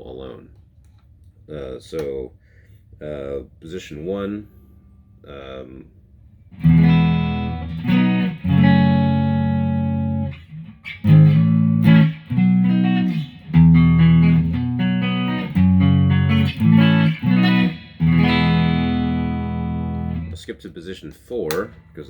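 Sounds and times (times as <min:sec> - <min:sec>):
electric guitar strummed chords: 0:06.6 - 0:20.4.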